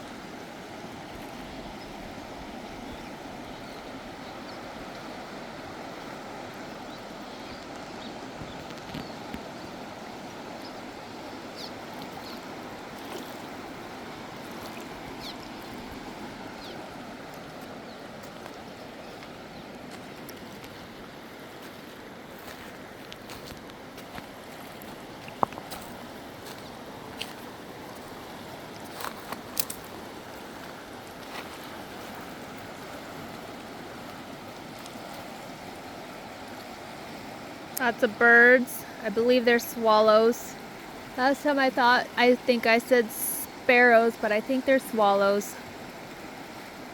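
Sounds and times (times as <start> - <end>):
river water rushing: 0.0 - 46.9.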